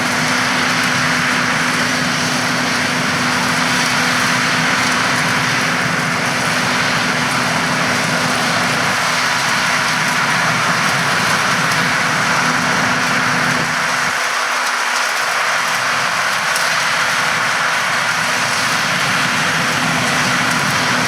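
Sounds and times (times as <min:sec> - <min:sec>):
harvesting machinery running: 0:00.0 - 0:21.0.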